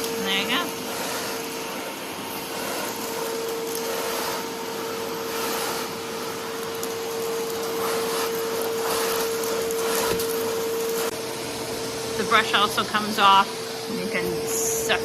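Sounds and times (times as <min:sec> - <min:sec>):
shop vacuum running: 0:00.0 - 0:15.0.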